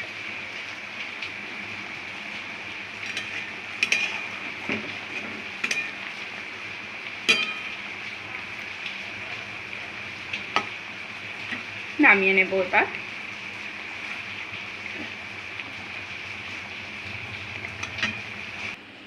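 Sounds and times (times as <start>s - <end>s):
gravy sizzling in a pan: 0.0s - 18.8s
utensil clinking against pan: 3.0s - 4.3s, 5.6s - 6.0s, 7.3s - 7.8s, 17.8s - 18.3s.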